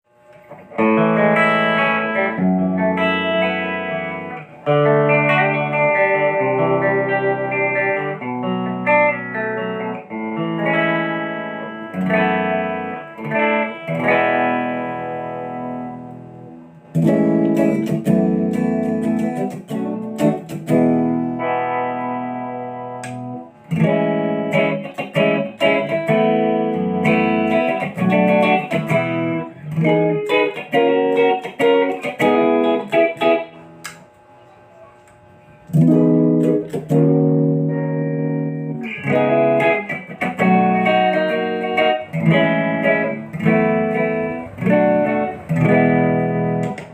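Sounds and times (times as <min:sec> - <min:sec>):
electric guitar through an amp: 0:00.1 - 0:46.9
sharp strummed guitar strokes: 0:38.5 - 0:46.9.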